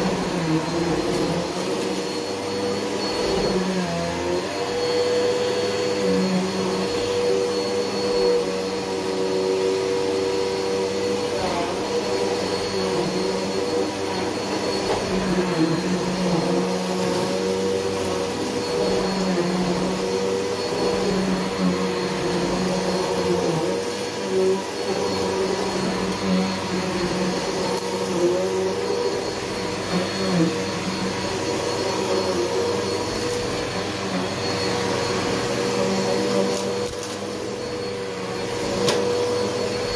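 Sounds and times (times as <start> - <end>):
vacuum cleaner running on carpet: 0.0 - 39.9.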